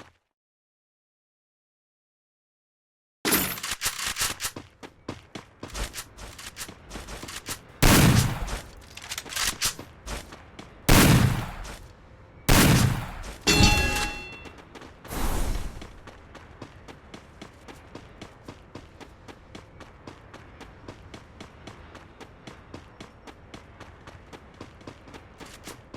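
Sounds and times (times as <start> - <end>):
video game gunfire: 5.7 - 10.3, 10.9 - 11.8, 12.5 - 14.4
heavy echoing blasts: 7.8 - 8.9, 10.9 - 11.8, 12.5 - 14.4.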